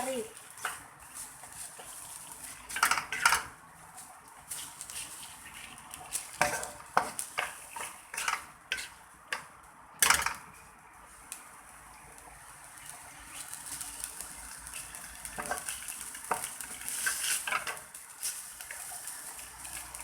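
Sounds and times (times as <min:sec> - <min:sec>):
metal utensil scraping cookware: 0:02.7 - 0:03.5, 0:06.4 - 0:09.0.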